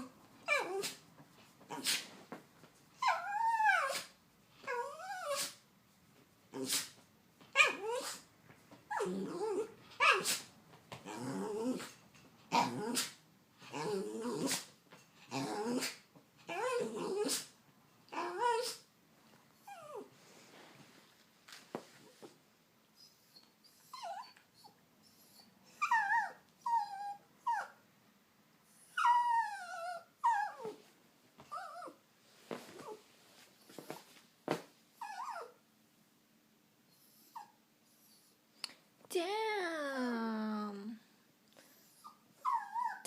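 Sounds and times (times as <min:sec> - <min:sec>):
dog whining and grumbling: 0:00.0 - 0:01.0, 0:03.0 - 0:05.6, 0:07.5 - 0:08.2, 0:08.9 - 0:10.4, 0:11.0 - 0:17.5, 0:18.1 - 0:18.9, 0:19.6 - 0:20.1, 0:23.0 - 0:27.8, 0:28.7 - 0:30.9, 0:31.5 - 0:32.0, 0:35.0 - 0:35.6, 0:41.8 - 0:43.0
dog sneezing and snorting: 0:01.8 - 0:02.2, 0:05.3 - 0:05.6, 0:06.6 - 0:07.0, 0:10.1 - 0:10.5, 0:17.3 - 0:17.5.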